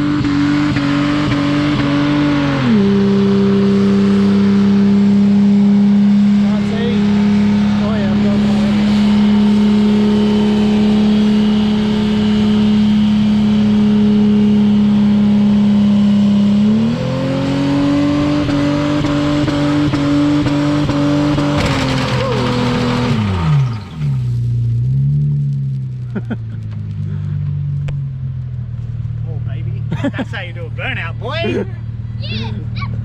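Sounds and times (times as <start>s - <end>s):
car engine revving high: 0.0s - 25.2s.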